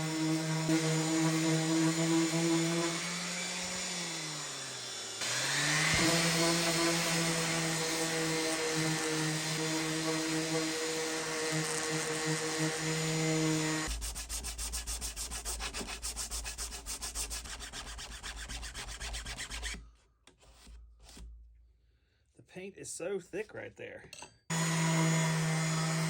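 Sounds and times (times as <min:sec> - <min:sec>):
power tool motor whine: 0:00.6 - 0:13.9, 0:24.5 - 0:26.0.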